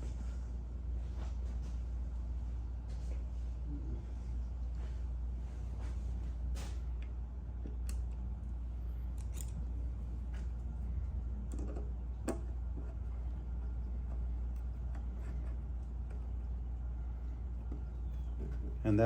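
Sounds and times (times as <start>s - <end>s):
steady low hum: 0.0s - 19.0s
small parts clicking: 9.2s - 9.6s.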